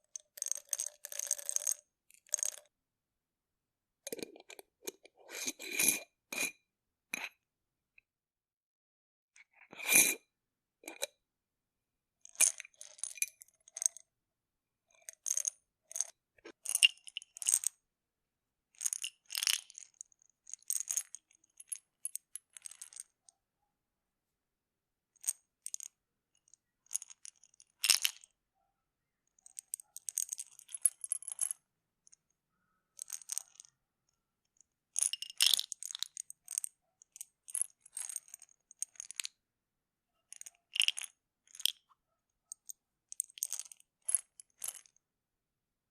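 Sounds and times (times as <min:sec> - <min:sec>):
pills rattling in a bottle: 0:00.0 - 0:02.7, 0:12.3 - 0:14.0, 0:15.0 - 0:17.7, 0:18.8 - 0:23.1, 0:25.2 - 0:28.3, 0:29.4 - 0:31.6, 0:33.0 - 0:33.8, 0:35.0 - 0:39.3, 0:40.3 - 0:41.8, 0:42.5 - 0:45.0.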